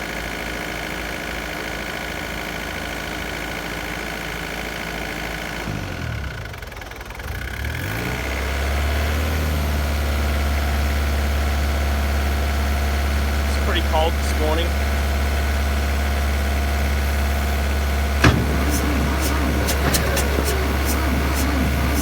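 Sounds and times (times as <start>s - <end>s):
diesel engine running: 13.0s - 22.0s.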